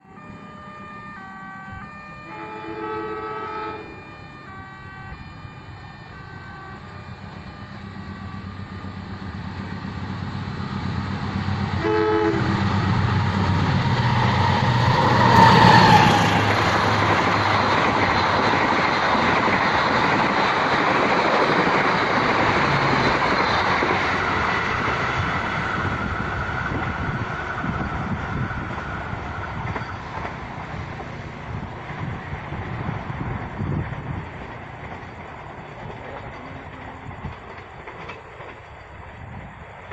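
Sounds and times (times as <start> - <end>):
train passing with wheel noise: 0.0 - 39.9
train horn blasts: 0.3 - 8.8, 11.7 - 13.0.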